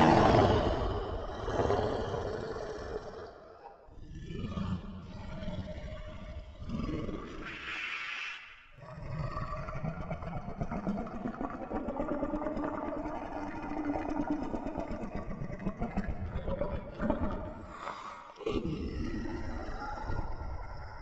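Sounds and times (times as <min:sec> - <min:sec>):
low rough creature growl: 0:00.0 - 0:07.6, 0:16.3 - 0:21.0.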